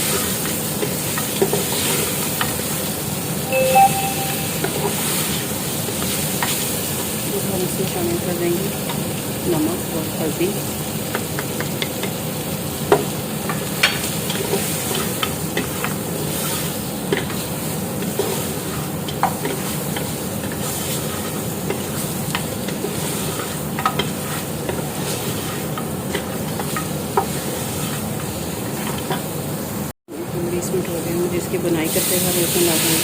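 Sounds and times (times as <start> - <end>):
meat sizzling in oil: 6.6 - 29.8.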